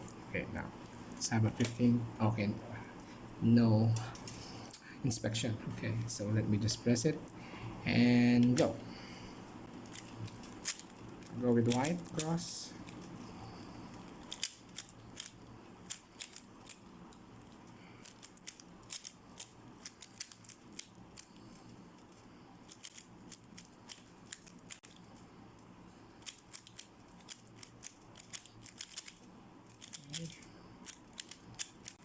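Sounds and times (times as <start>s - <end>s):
plastic clicks of speed cube turning: 14.0s - 25.1s, 26.2s - 32.0s.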